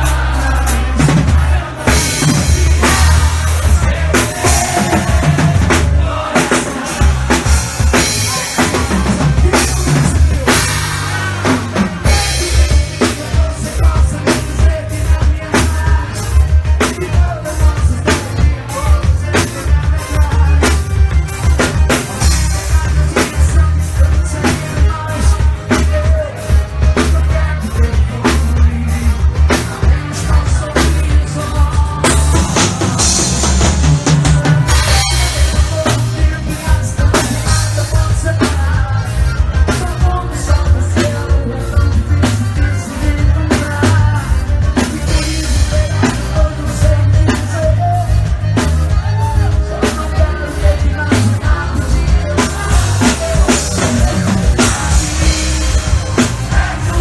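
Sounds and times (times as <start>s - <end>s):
band playing: 0.0s - 57.0s
drum kit beat: 0.0s - 57.0s
heavy bass line: 0.0s - 57.0s
person singing: 0.0s - 57.0s.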